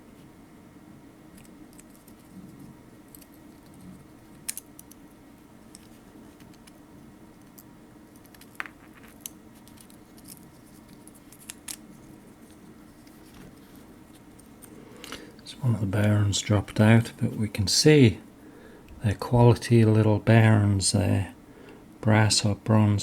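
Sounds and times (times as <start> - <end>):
low steady hum: 0.0 - 23.0
small metal parts clicking: 7.4 - 11.8.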